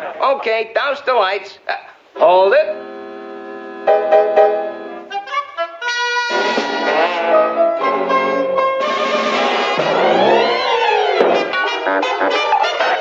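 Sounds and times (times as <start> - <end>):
orchestral cartoon music with brass: 5.8 - 13.0.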